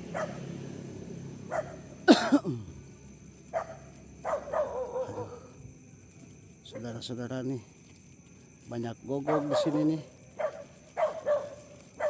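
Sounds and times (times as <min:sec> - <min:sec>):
dog barking: 0:00.1 - 0:00.5, 0:01.5 - 0:02.0, 0:03.5 - 0:05.5, 0:09.2 - 0:12.0.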